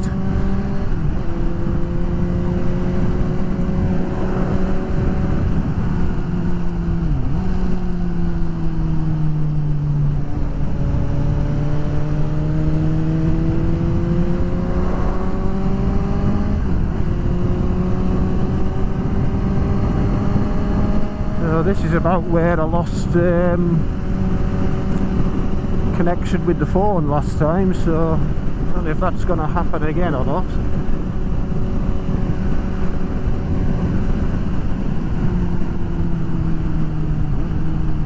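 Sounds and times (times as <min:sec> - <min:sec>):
motorcycle engine cruising: 0:00.0 - 0:38.0
wind noise: 0:00.0 - 0:38.0.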